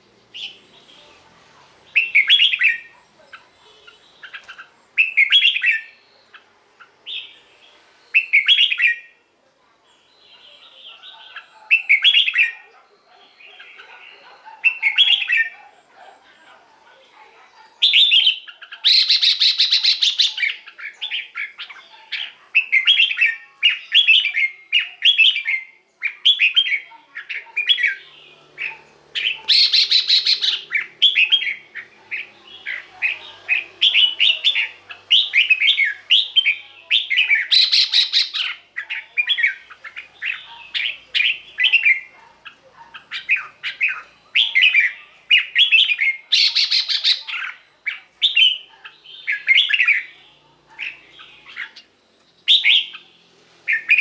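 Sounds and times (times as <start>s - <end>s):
bird singing whistled phrases: 1.9s - 2.9s, 8.1s - 9.1s, 17.8s - 21.3s, 29.2s - 31.6s, 32.7s - 38.6s, 43.1s - 47.6s, 52.5s - 53.0s
harsh bird call burst: 28.6s - 31.7s, 32.4s - 38.6s.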